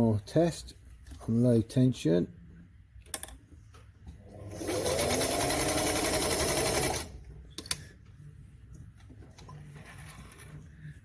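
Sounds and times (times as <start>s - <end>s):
sewing machine stitching: 4.4s - 7.2s.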